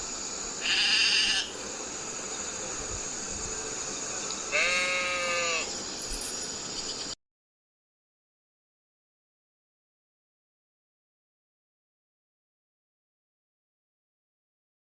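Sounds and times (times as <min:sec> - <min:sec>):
steady hiss: 0:00.0 - 0:07.2
sheep bleating: 0:00.6 - 0:01.6, 0:04.5 - 0:05.7.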